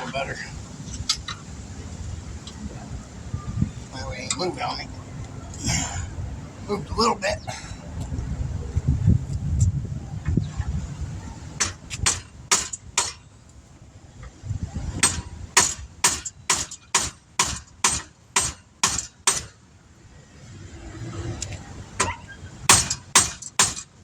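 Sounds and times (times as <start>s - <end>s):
hammer striking metal: 11.6s - 13.3s, 15.0s - 19.6s, 22.0s - 23.9s.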